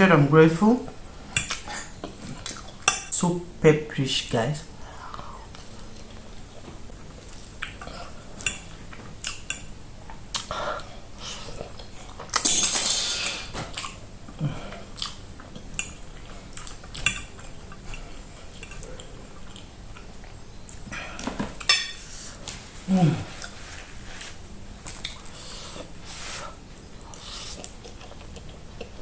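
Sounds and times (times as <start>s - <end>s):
chewing and biting: 27.0s - 29.0s.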